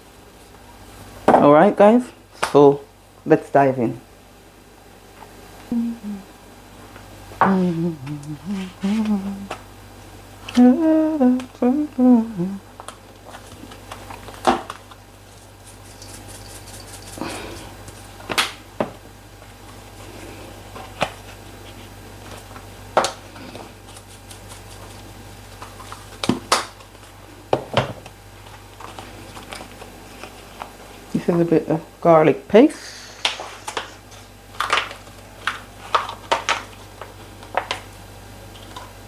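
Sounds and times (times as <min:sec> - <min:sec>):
woman humming: 0:05.6 - 0:06.4, 0:07.4 - 0:09.7, 0:10.5 - 0:12.7, 0:17.1 - 0:17.8.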